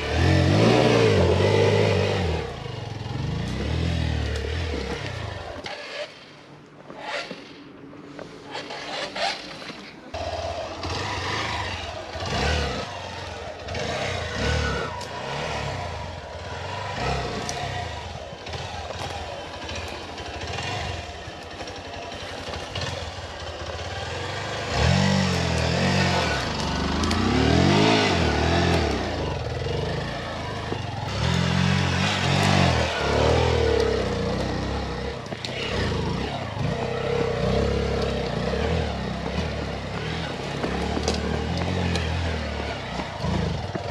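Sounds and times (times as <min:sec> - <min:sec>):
motorcycle engine revving: 0:00.0 - 0:43.9.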